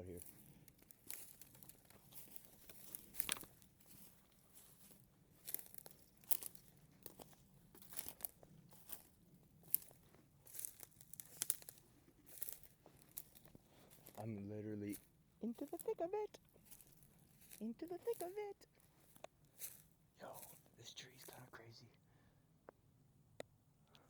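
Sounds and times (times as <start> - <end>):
footsteps crunching through dry leaves: 0.0 - 14.3, 14.9 - 20.7
twigs snapping: 0.2 - 14.2.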